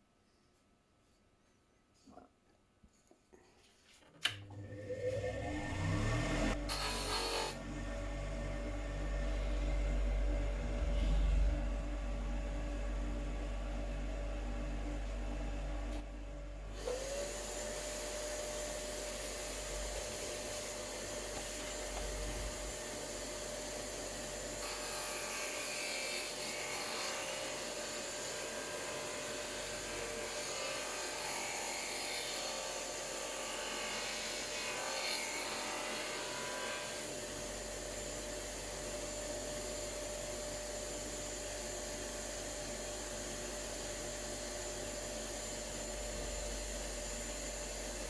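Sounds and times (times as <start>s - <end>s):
sander motor whining: 4.5s - 12.2s.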